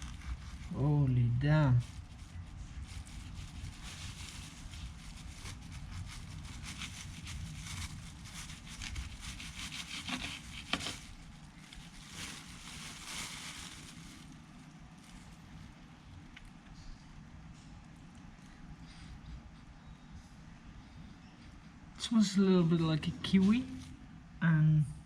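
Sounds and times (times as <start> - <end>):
knife scraping fruit: 0.0 - 0.8, 8.8 - 11.0.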